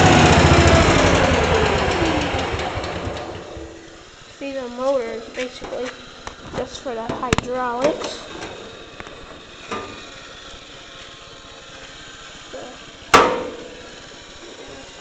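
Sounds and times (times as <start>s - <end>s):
steady background hiss: 3.6s - 15.0s
sharp ringing clank: 13.1s - 13.9s.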